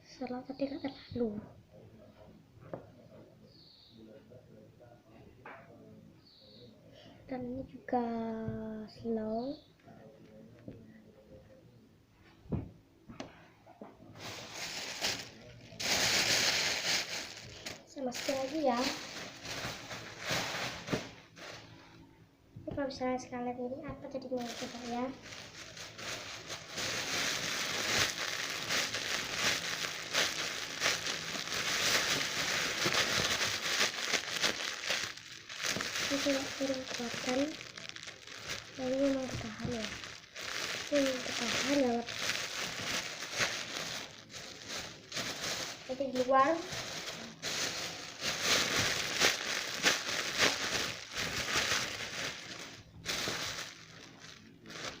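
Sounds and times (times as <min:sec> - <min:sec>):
plastic crinkling and rustling: 0:14.0 - 0:22.0, 0:24.1 - 0:55.0.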